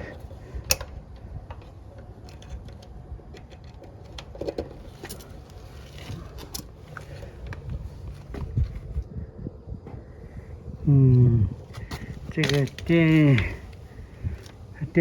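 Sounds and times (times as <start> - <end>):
low background rumble: 0.0 - 15.0
clicks and metallic rattles: 11.8 - 14.6.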